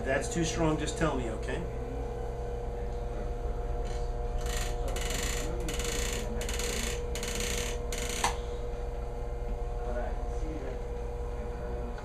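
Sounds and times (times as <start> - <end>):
electric massager humming: 0.0 - 12.0
massager head rubbing strokes: 3.9 - 8.4.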